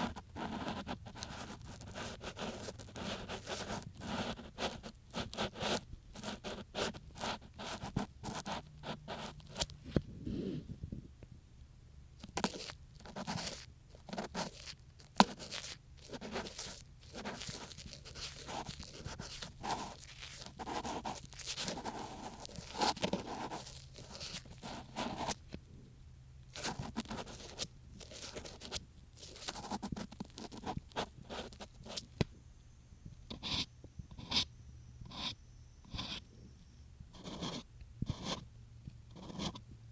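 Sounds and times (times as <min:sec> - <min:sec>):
ear pick scraping microphone: 0:09.8 - 0:11.1.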